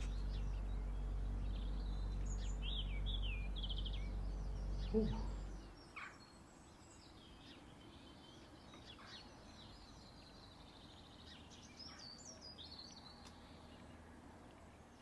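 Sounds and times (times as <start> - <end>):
birds chirping and whistling: 0.0 - 6.4
low background hum: 0.0 - 15.0.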